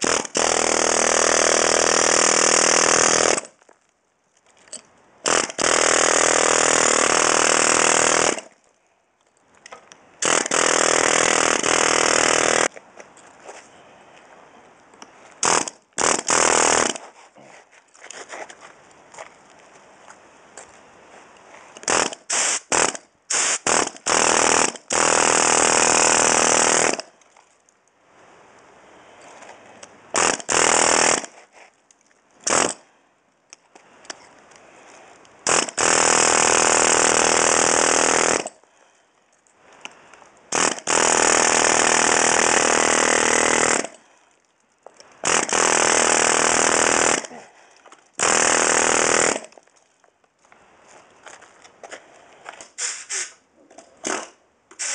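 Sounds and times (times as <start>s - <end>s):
pneumatic air hammer chipping: 0.0s - 3.5s, 5.2s - 8.5s, 10.2s - 12.7s, 15.4s - 17.1s, 21.8s - 27.1s, 30.2s - 31.5s, 32.4s - 32.8s, 35.4s - 38.6s, 40.5s - 44.0s, 45.2s - 47.4s, 48.2s - 49.6s, 52.6s - 53.4s, 54.0s - 54.9s.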